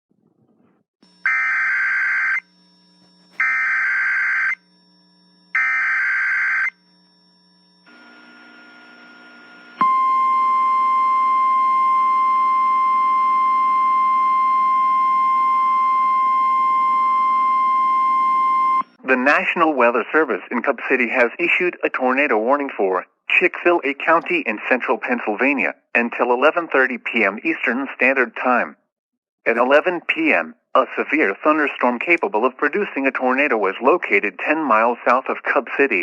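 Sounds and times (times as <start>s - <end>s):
steady alarm tone: 1.0s - 8.8s, 9.8s - 19.0s.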